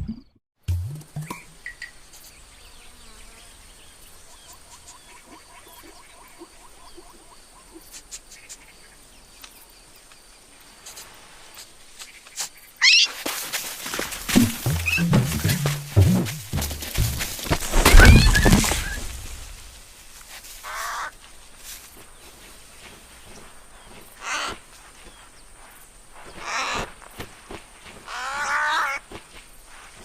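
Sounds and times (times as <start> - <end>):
rapid animal chirps: 14.4 - 16.5.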